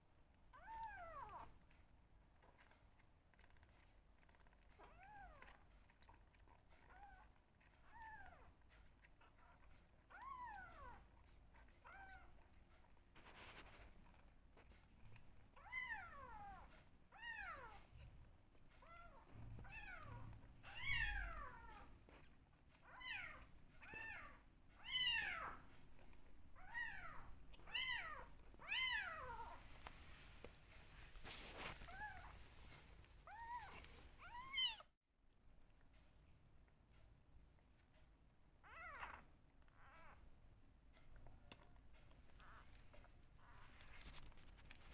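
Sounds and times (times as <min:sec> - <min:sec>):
kittens meowing: 0:18.8 - 0:21.9, 0:33.3 - 0:34.9.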